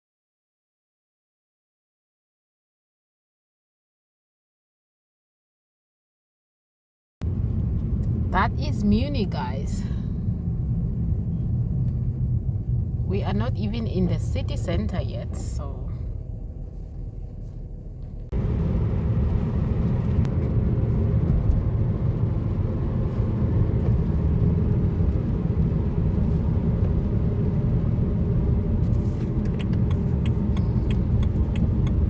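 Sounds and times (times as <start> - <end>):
car road and engine rumble: 7.2 - 32.0.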